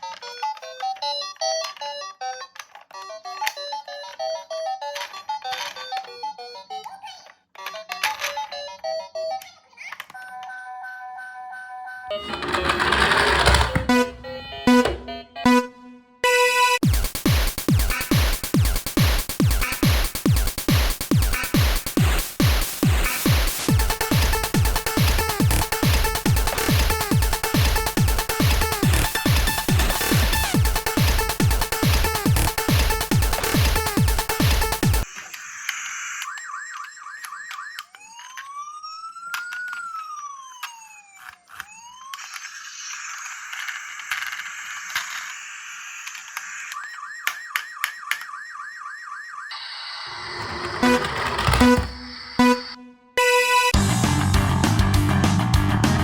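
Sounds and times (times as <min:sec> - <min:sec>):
music: 0:00.0 - 0:09.6, 0:12.0 - 0:35.0, 0:50.5 - 0:56.0
toy electronic siren: 0:02.9 - 0:15.7, 0:24.1 - 0:53.8.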